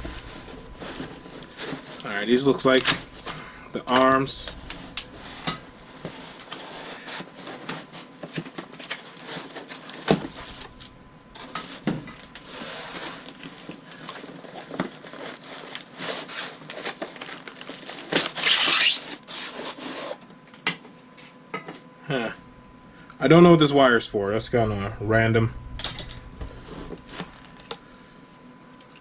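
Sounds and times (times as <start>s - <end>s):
packaging rustling and crinkling: 0.0s - 20.6s, 25.8s - 27.8s.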